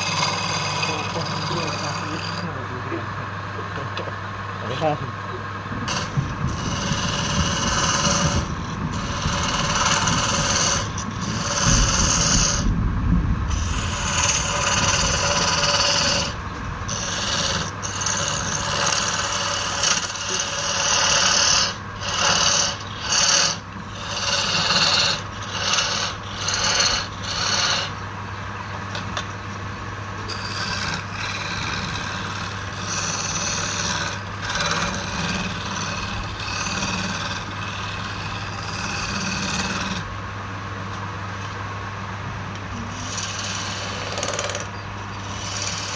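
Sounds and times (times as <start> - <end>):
wood lathe motor hum: 0.0 - 2.8, 5.7 - 12.8, 13.5 - 28.0, 30.2 - 40.1, 42.7 - 45.9
tool scraping spinning wood: 0.0 - 3.0, 4.7 - 12.9, 13.5 - 28.1, 30.2 - 40.1, 42.6 - 45.9.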